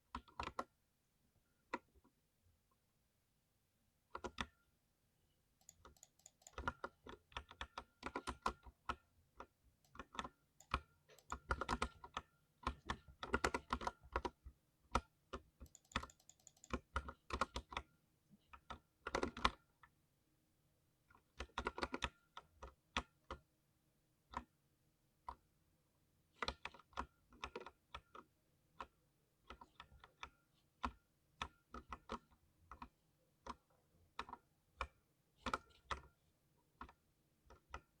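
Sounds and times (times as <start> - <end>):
mechanical keyboard typing: 5.6 - 9.0, 9.8 - 17.8.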